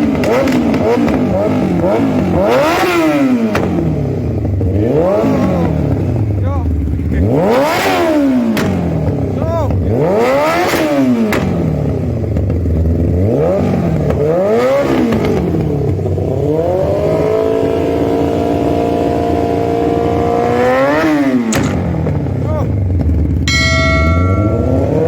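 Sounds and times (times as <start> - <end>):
motorcycle engine revving: 0.0 - 25.0
exhaust pops crackling: 8.5 - 9.8, 10.7 - 12.7, 21.4 - 25.0.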